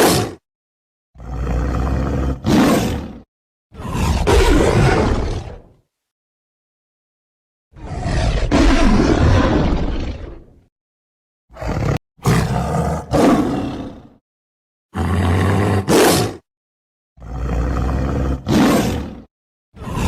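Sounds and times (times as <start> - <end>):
tiger roaring: 1.2 - 5.7, 7.8 - 10.5, 11.5 - 14.2, 15.0 - 16.4, 17.2 - 20.0.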